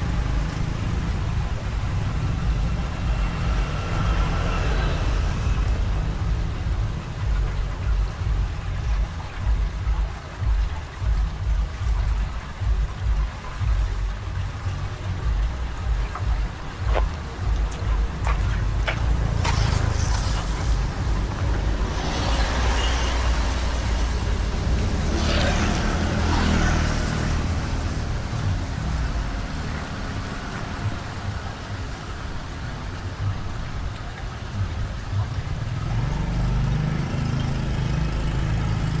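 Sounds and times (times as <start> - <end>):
excavator engine rumbling: 0.0 - 39.0
loud rushing noise: 15.3 - 31.5.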